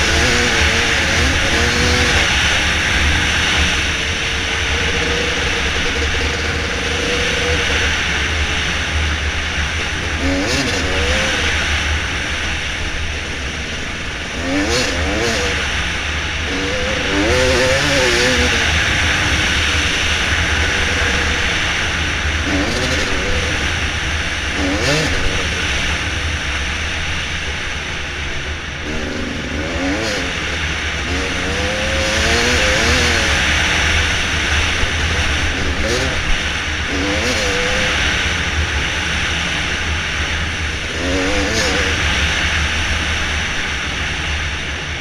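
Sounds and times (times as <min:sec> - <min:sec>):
dirt bike engine revving: 0:00.0 - 0:44.7
steady rushing noise: 0:00.0 - 0:45.0.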